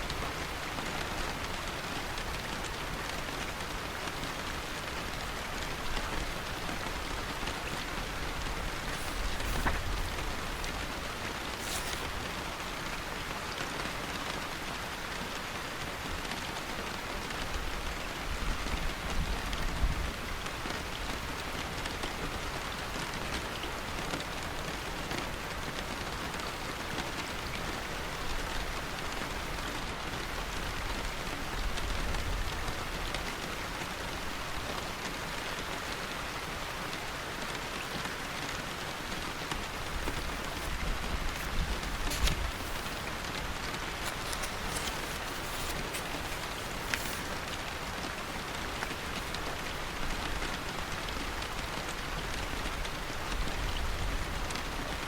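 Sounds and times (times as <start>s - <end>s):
heavy rain pattering: 0.0s - 55.0s.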